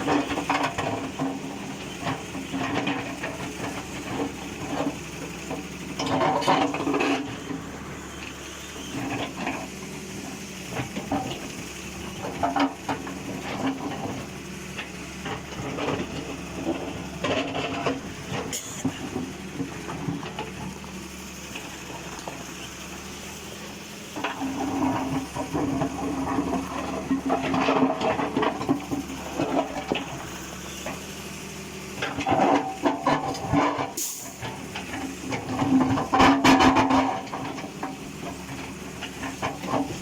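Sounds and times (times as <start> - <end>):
metal clanks and knocks: 0.0 - 7.4, 12.1 - 20.7, 24.2 - 31.1, 32.0 - 40.0
excavator diesel engine running: 0.0 - 40.0.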